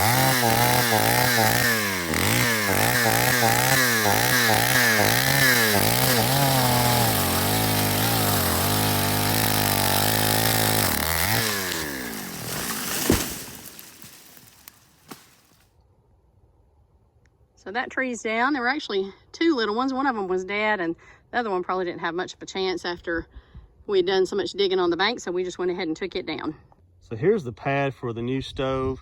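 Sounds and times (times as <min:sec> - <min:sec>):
chainsaw cutting: 0:00.0 - 0:15.5.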